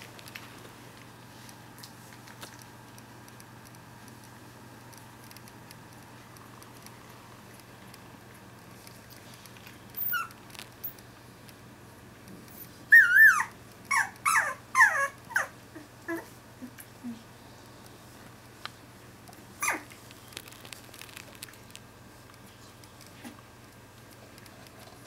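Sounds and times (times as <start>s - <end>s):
puppy short squeals: 10.0s - 10.4s, 12.9s - 15.5s, 19.6s - 19.9s
puppy whining: 10.0s - 11.0s, 12.5s - 17.2s, 19.6s - 20.0s.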